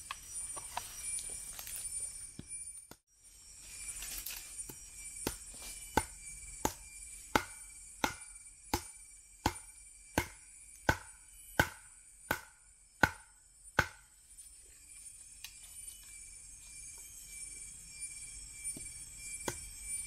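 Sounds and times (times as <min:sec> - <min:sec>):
high-pitched hum: 0:00.0 - 0:20.0
sharp ringing knocks: 0:04.8 - 0:14.2.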